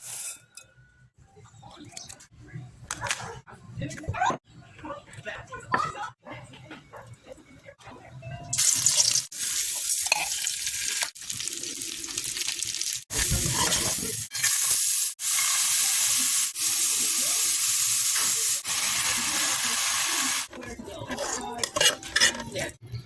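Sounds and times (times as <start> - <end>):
rice sizzling in a hot pan: 14.4 - 20.5.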